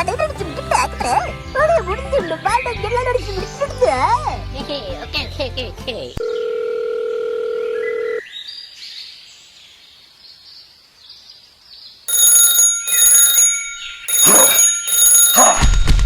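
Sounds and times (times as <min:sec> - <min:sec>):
pulsed electronic ringing: 0:12.1 - 0:16.0.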